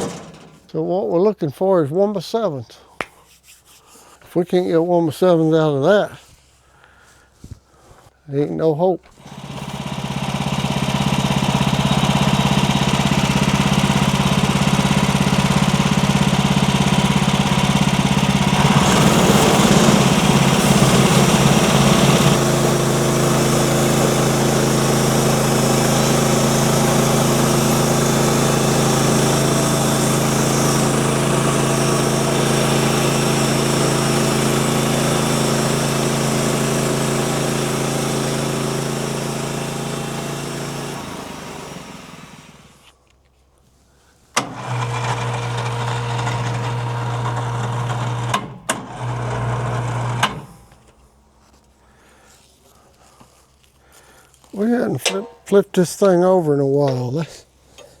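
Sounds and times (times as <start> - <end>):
small gasoline engine running: 0.0 - 0.6, 9.1 - 42.9, 44.4 - 51.0
saw blade cutting log: 9.1 - 42.8.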